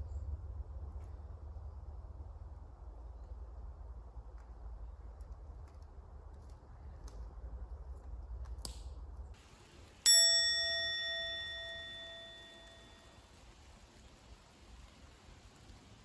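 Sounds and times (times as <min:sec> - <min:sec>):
low outdoor rumble: 0:00.0 - 0:16.0
bright bell ding: 0:09.4 - 0:13.6.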